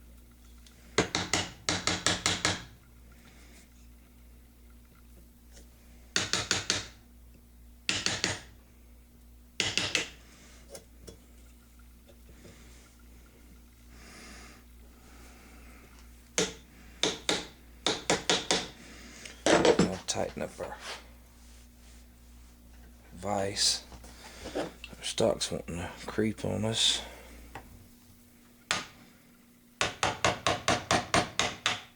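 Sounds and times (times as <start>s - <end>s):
hammer tapping chisel: 1.0s - 2.7s, 6.2s - 7.0s, 7.9s - 8.5s, 9.6s - 10.2s, 16.4s - 18.8s, 29.8s - 31.9s.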